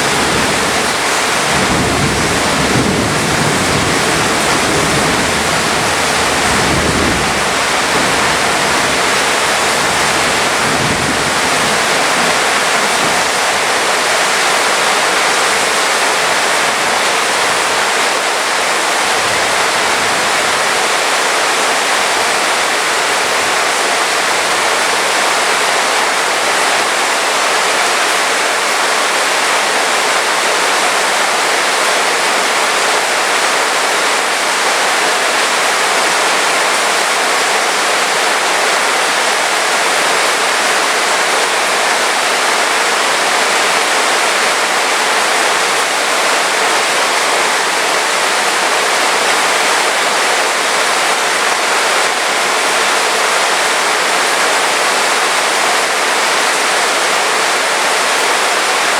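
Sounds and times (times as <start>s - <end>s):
low rumble of thunder: 0.0s - 13.6s
heavy rain pouring: 0.0s - 58.9s.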